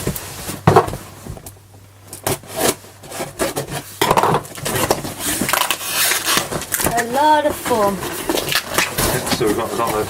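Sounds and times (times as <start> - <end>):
cardboard scraping and rubbing: 0.0 - 6.6.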